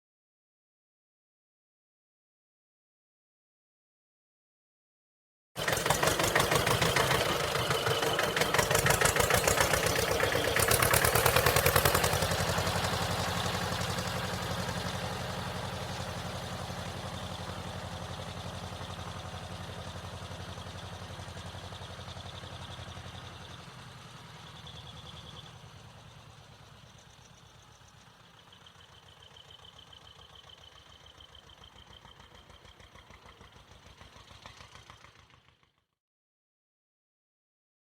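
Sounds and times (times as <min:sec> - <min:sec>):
tractor engine chugging: 0:05.6 - 0:35.6.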